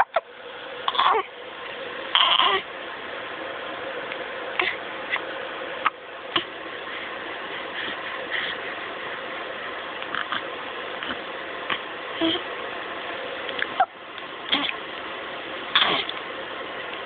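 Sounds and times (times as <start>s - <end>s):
baby hiccupping: 0.0s - 0.2s, 0.9s - 1.3s, 2.2s - 2.7s, 10.0s - 12.5s, 14.5s - 14.8s, 15.7s - 16.2s
steady background hum: 0.0s - 17.0s.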